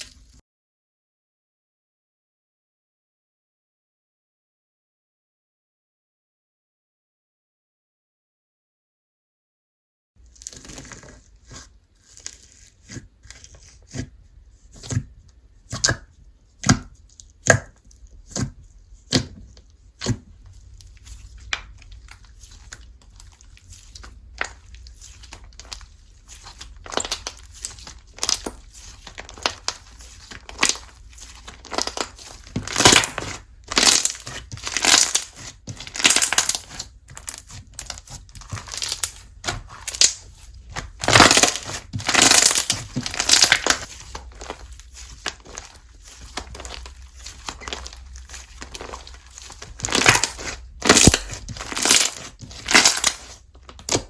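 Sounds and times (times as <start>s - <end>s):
slime crackling and squishing: 10.2s - 54.0s
slime popping: 21.0s - 54.0s.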